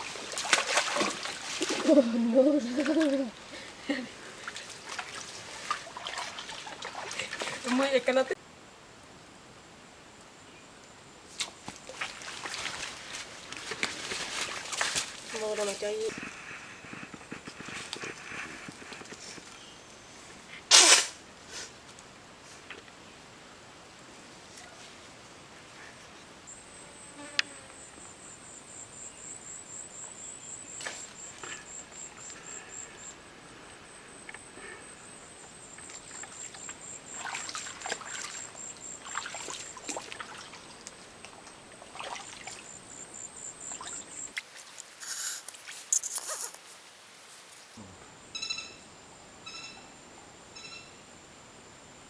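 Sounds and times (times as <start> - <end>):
scraping or splashing noises: 0.0 - 2.0, 4.4 - 7.9, 11.3 - 16.3
insect trilling: 43.4 - 46.8, 47.5 - 51.0.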